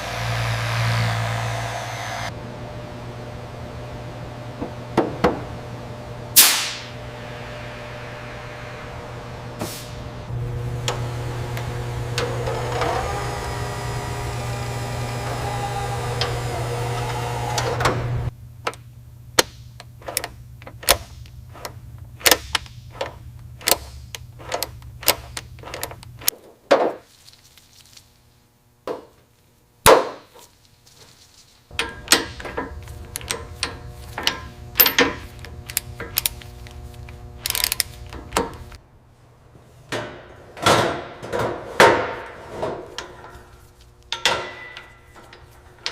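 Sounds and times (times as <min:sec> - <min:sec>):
machine hum: 0:00.0 - 0:26.3, 0:31.7 - 0:40.6.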